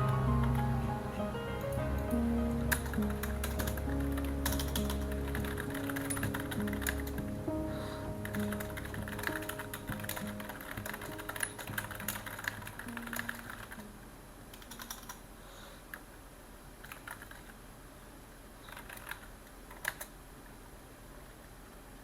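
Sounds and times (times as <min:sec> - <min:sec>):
typing on computer keyboard: 0:02.7 - 0:07.3, 0:08.2 - 0:13.8, 0:14.6 - 0:15.2, 0:16.8 - 0:17.6, 0:18.7 - 0:20.1.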